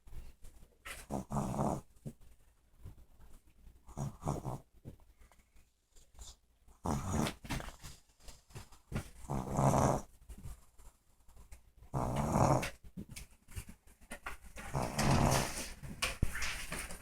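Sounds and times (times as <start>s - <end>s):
dog snoring: 1.0s - 1.8s, 3.9s - 4.6s, 6.8s - 7.7s, 9.2s - 10.1s, 11.9s - 12.8s, 14.7s - 15.8s.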